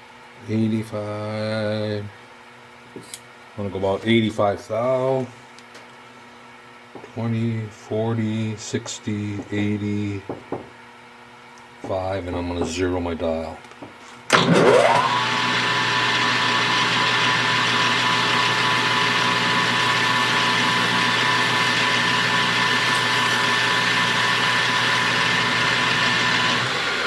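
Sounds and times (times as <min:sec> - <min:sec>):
metal lathe motor whining: 0:14.3 - 0:27.0.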